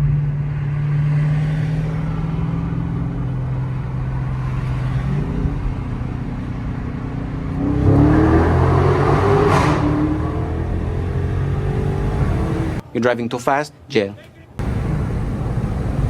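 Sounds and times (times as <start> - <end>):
car engine accelerating: 1.2 - 12.8, 14.6 - 16.0.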